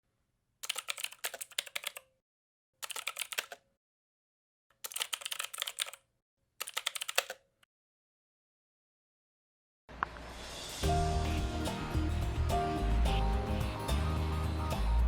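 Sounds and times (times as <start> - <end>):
fast keyboard typing: 0.6 - 2.1, 2.8 - 3.6, 4.8 - 7.5.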